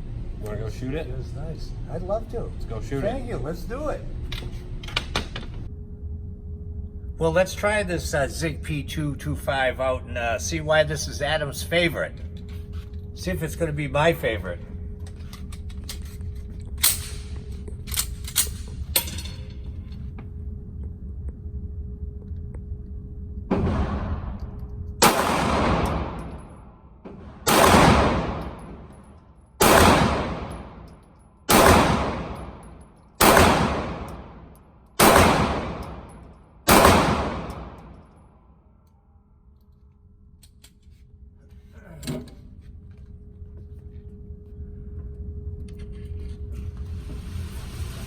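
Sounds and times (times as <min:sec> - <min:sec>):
pistol shots echoing: 0:25.0 - 0:26.5, 0:27.2 - 0:28.9, 0:29.6 - 0:30.9, 0:31.5 - 0:38.0.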